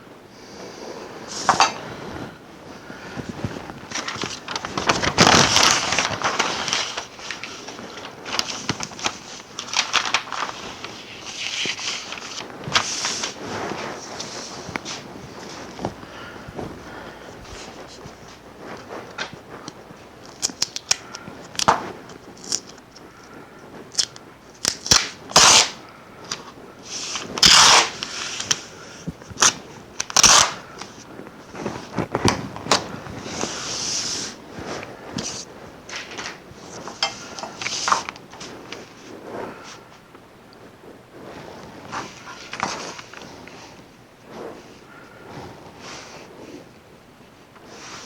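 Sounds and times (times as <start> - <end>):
paper rustling and crinkling: 0.5 - 40.0, 41.5 - 46.6.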